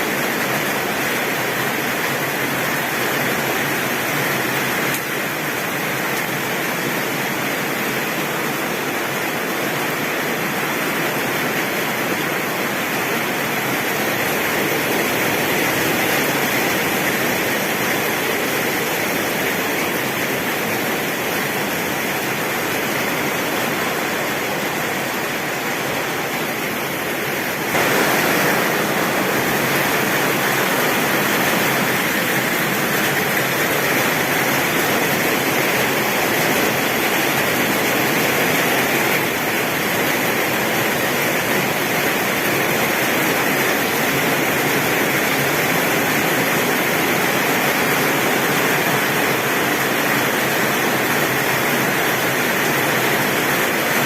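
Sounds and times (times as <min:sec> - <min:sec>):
heavy rain on a tin roof: 0:00.0 - 0:54.0.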